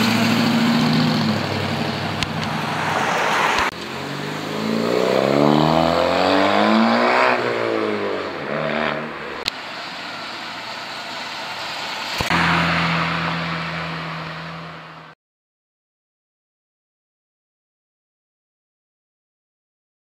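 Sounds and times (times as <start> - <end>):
car engine accelerating: 0.0 - 15.2
engine droning steadily: 0.0 - 15.2.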